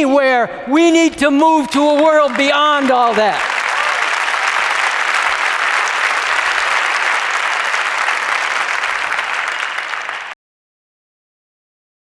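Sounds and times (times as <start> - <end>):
audience applauding: 1.7 - 10.4.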